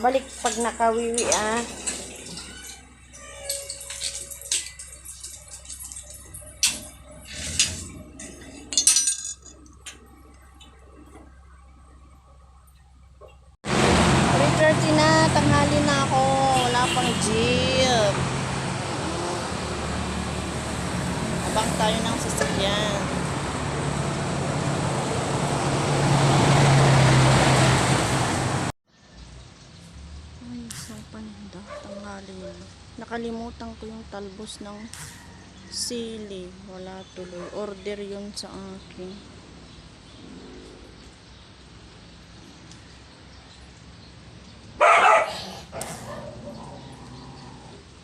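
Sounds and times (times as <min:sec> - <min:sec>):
street traffic: 0:00.0 - 0:48.0
metallic clinks and clatters: 0:00.3 - 0:10.8
vehicle engine passing close: 0:09.7 - 0:31.8, 0:38.9 - 0:48.0.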